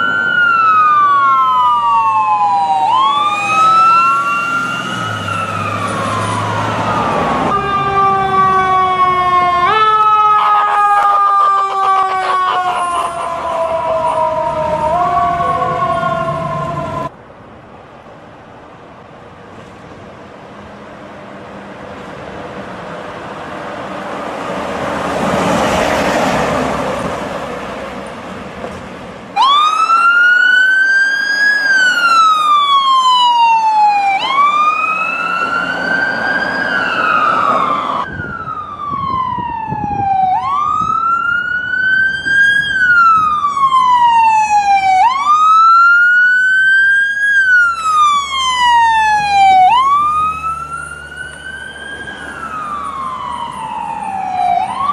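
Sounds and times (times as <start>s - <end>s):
ambulance siren wailing: 0.0s - 17.1s, 29.4s - 54.9s.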